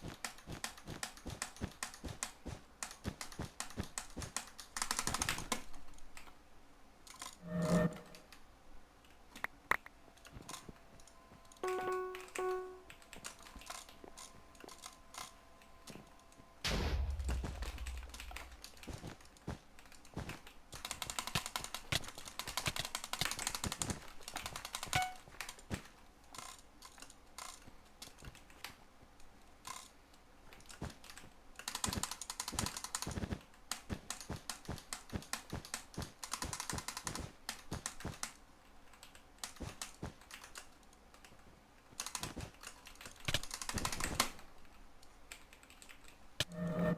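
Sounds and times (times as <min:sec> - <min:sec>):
brief electronic tone: 0:07.4 - 0:08.2, 0:11.6 - 0:12.9, 0:25.0 - 0:25.2, 0:46.4 - 0:46.9
keyboard keys clicking: 0:10.2 - 0:16.0, 0:17.8 - 0:25.6
low thump: 0:16.7 - 0:18.6.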